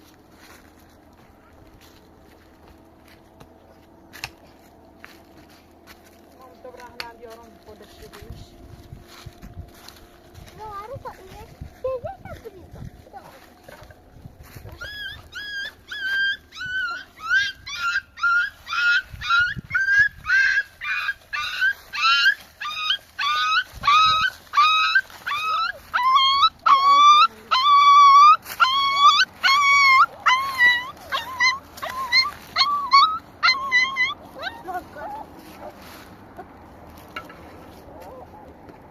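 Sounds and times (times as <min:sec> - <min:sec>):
puppy whimpering: 0:14.6 - 0:35.8, 0:38.0 - 0:38.5.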